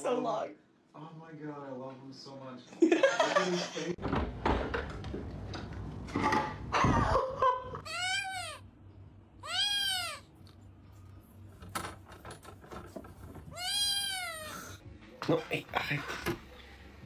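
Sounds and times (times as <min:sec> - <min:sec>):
cat meowing: 0:07.8 - 0:08.6, 0:09.4 - 0:10.3, 0:13.5 - 0:14.8
rustling and knocking: 0:11.4 - 0:13.7.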